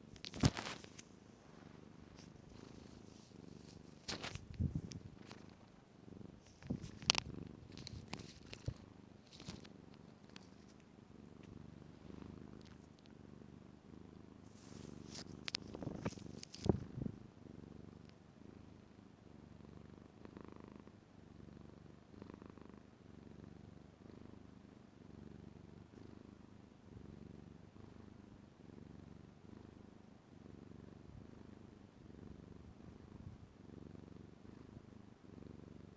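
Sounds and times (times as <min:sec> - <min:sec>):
sharp clicks and rustles: 0:00.0 - 0:05.7, 0:06.4 - 0:11.5, 0:14.6 - 0:17.0
kitten purring: 0:00.0 - 0:35.9.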